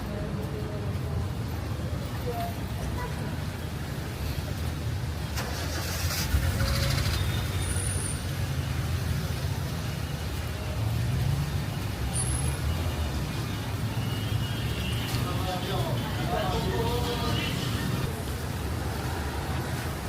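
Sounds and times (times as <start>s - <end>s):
bus engine rumbling: 0.0s - 14.2s, 14.9s - 20.0s
street traffic: 0.0s - 20.0s.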